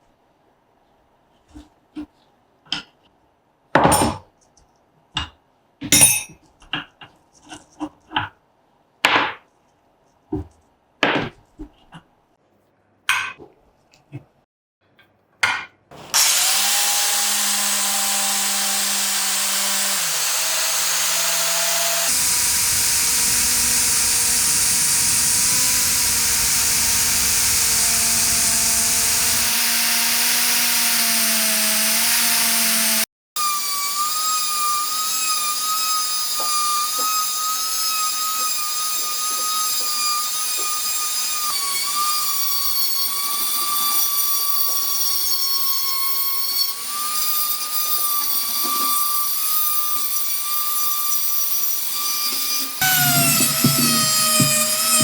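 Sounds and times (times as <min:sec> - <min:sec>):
power tool on metal hissing: 0:16.1 - 0:29.8, 0:52.6 - 0:55.0.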